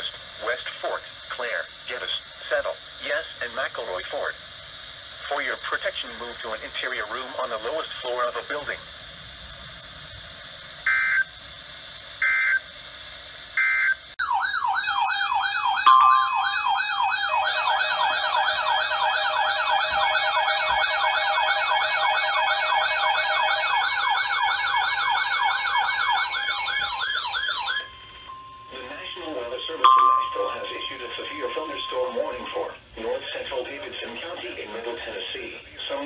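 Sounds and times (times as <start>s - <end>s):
electronic data tones: 10.9s - 11.3s, 13.6s - 23.2s, 27.6s - 32.8s
electronic siren warbling: 13.7s - 32.7s
higher-pitched warbling siren: 14.2s - 32.8s.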